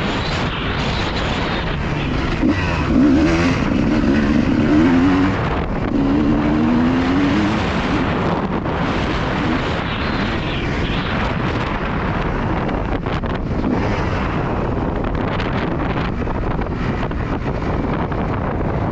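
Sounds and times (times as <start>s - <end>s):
wind buffeting microphone: 0.0s - 18.9s
two-stroke motorcycle engine: 1.4s - 10.1s.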